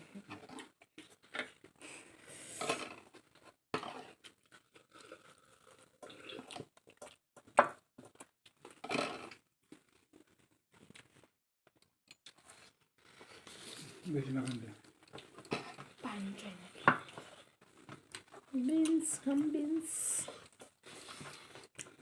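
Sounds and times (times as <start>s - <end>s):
person chewing: 2.7s - 11.3s, 12.2s - 16.0s, 16.7s - 18.5s, 20.3s - 22.0s.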